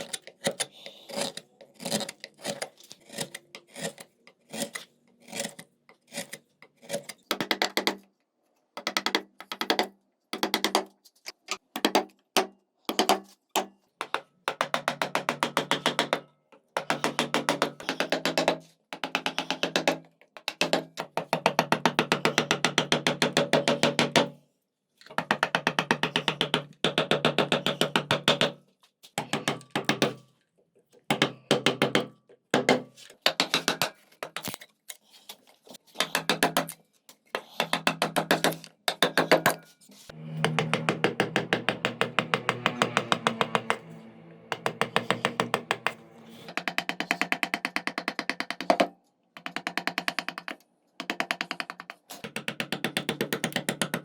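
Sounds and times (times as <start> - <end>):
rasp strokes on wood: 0.5 - 7.2, 39.2 - 47.3.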